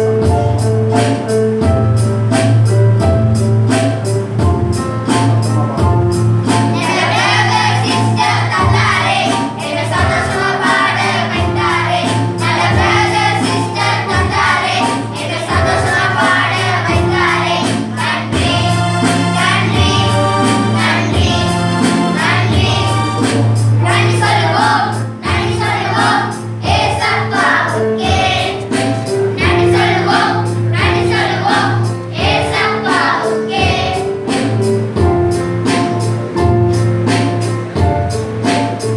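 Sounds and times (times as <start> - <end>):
steady percussion beat: 0.0 - 38.9
choir singing church song: 6.4 - 34.4.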